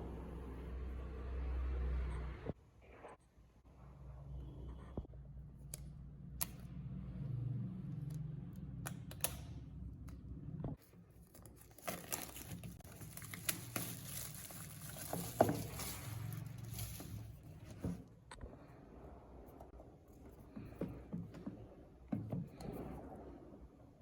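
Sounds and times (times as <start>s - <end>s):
packaging crinkling and rustling: 10.8s - 18.0s.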